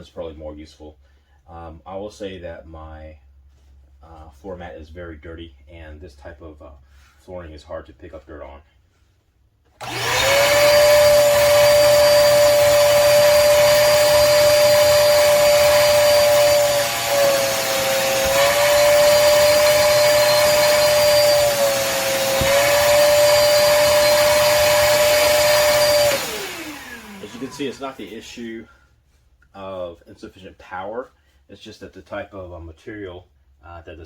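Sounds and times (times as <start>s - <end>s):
shop vacuum motor whine: 9.8s - 28.2s.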